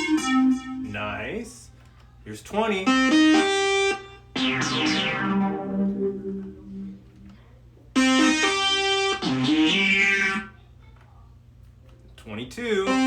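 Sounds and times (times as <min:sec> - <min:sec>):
synthesizer phrases: 0:02.6 - 0:07.4, 0:08.0 - 0:10.5.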